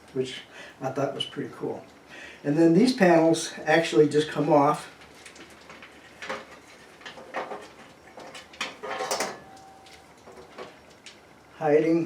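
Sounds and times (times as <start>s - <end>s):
computer case panels clicking and scraping: 6.2s - 10.8s.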